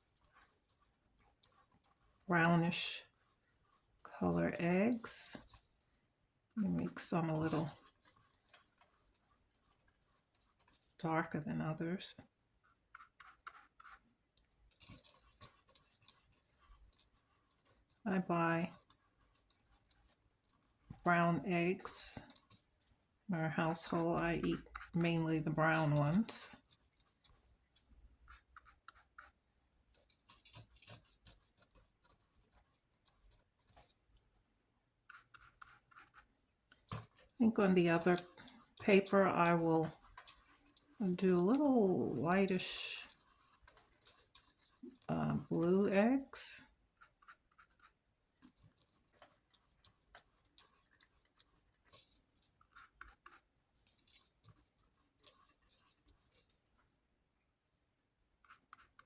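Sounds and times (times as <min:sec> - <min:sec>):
paintbrush scratchy strokes: 0:00.0 - 0:05.5, 0:06.8 - 0:10.8, 0:35.1 - 0:51.9
paintbrush dabbing on paper: 0:12.6 - 0:18.0, 0:23.8 - 0:33.6, 0:35.0 - 0:48.0.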